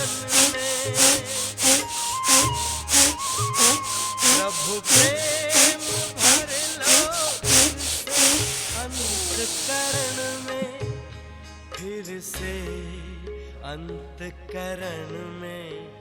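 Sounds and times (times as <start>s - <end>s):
forceful breaths through the nose: 0.0s - 10.6s
long drawn breath: 0.0s - 10.6s.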